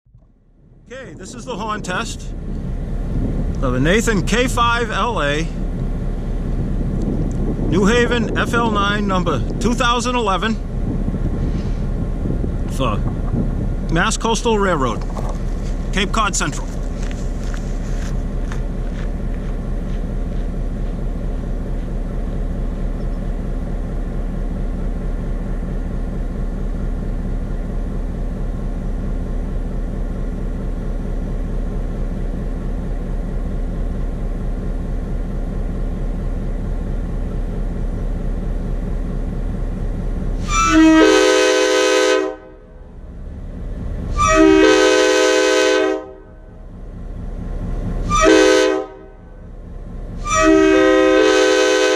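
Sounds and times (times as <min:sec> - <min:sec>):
diesel locomotive engine idling: 0:00.1 - 0:51.9
locomotive air horn blasts: 0:40.4 - 0:42.8, 0:44.1 - 0:46.5, 0:48.0 - 0:49.4, 0:50.2 - 0:51.9.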